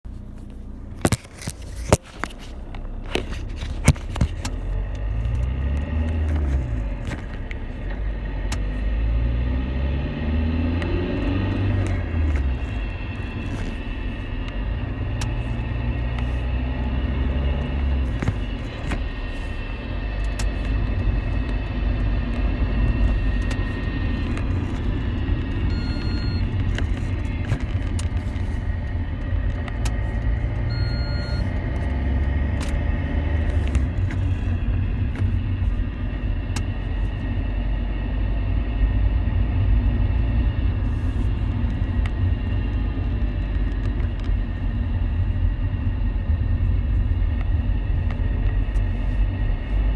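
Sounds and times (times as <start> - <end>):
car engine and road rumble: 0.0 - 49.9
faint high whine: 25.5 - 27.2, 30.7 - 31.5.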